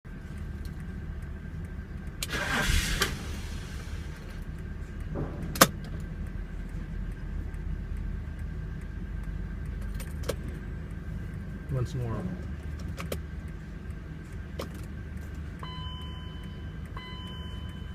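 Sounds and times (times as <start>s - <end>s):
car engine cranking without starting: 0.1s - 17.9s
short rushing noise: 2.3s - 4.4s.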